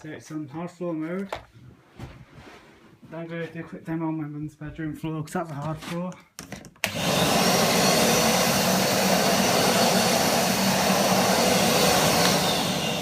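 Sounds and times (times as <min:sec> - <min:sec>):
vacuum cleaner running: 0:06.8 - 0:13.0.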